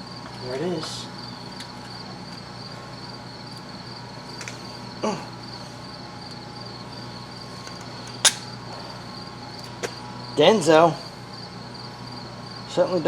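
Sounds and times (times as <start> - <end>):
high insect-like chirring: 0.0 - 13.0
sharp click: 8.2 - 8.5.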